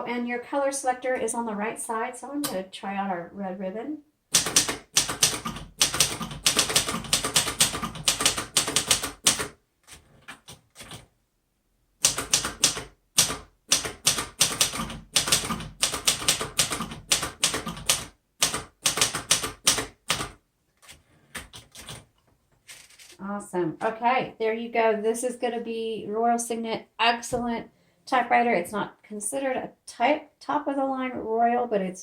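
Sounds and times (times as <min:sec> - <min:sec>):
typewriter keystrokes clacking: 0:04.4 - 0:09.6, 0:12.0 - 0:20.4.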